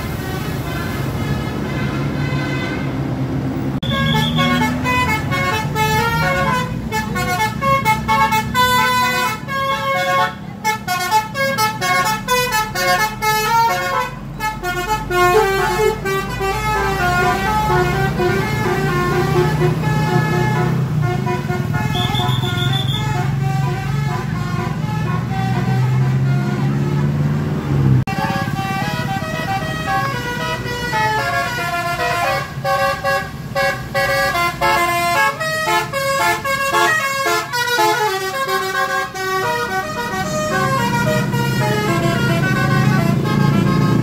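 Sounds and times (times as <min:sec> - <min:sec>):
bus horn playing melody: 0:00.0 - 0:03.1, 0:03.8 - 0:27.4, 0:28.0 - 0:44.0
bus engine running: 0:00.0 - 0:44.0.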